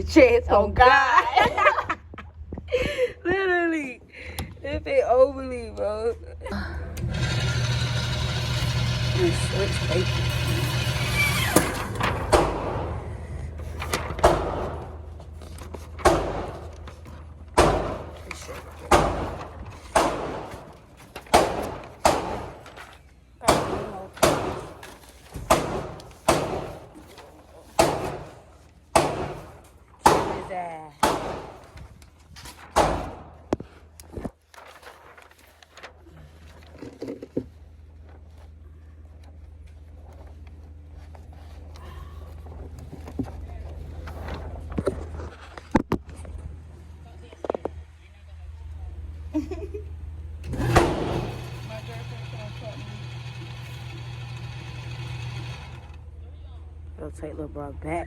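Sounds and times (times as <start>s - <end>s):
muffled gunshots: 18.9s - 20.7s, 21.3s - 22.6s, 28.9s - 31.7s.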